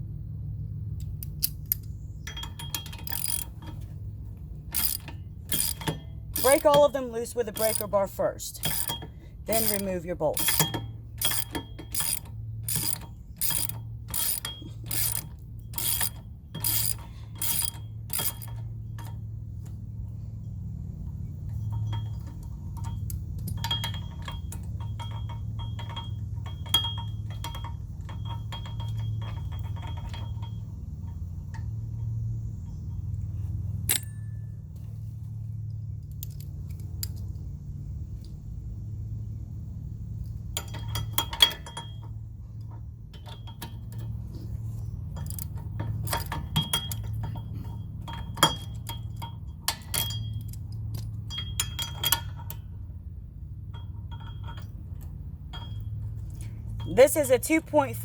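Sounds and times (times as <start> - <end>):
socket ratchet wrench clicking: 1.0 - 3.8, 4.7 - 6.8, 7.6 - 7.9, 8.6 - 19.1.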